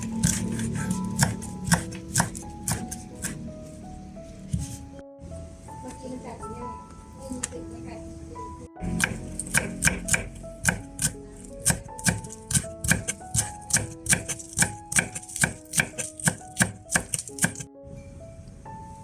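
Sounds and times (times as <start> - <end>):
knife chopping on cutting board: 0.0 - 3.4, 9.0 - 17.7
background music: 0.0 - 19.0.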